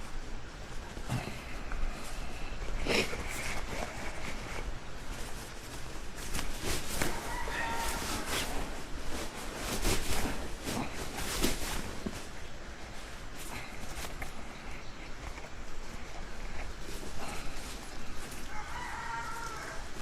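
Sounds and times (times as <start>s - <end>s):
farm animal calling: 7.1s - 8.6s.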